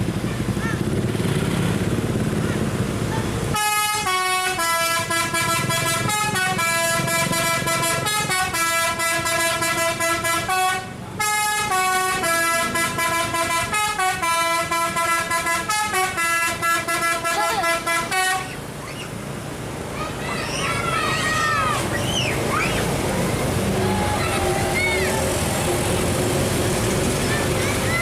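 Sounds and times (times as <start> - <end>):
multi-tone bus horn tune: 3.5 - 18.8.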